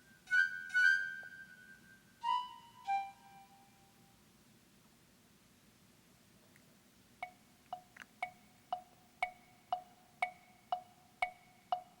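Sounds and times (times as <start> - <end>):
clock ticking: 7.2 - 12.0.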